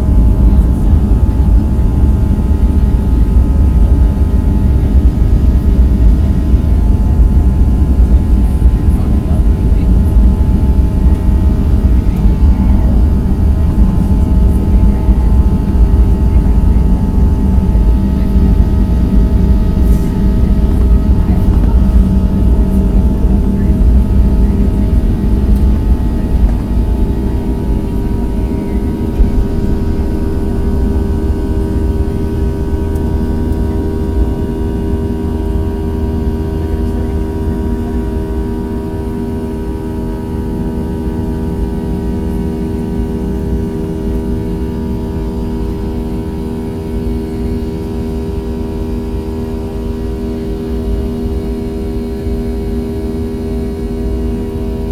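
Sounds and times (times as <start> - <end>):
heavy runway rumble: 0.0 - 54.9
jet engines at takeoff thrust: 0.0 - 54.9.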